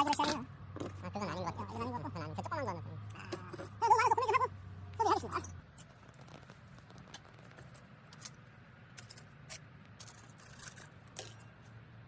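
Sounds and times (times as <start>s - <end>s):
low steady hum: 0.0s - 12.0s
hard pieces clicking and scraping: 5.8s - 11.7s.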